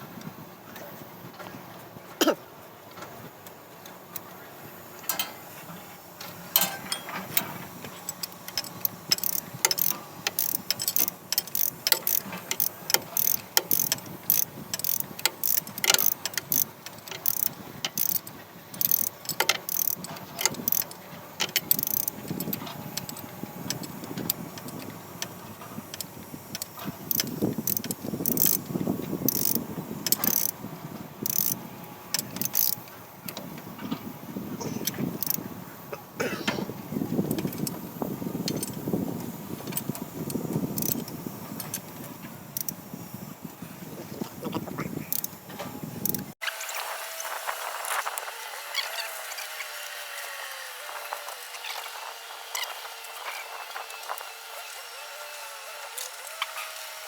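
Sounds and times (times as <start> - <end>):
hand tools clinking on metal: 5.0 - 5.5, 6.2 - 23.8.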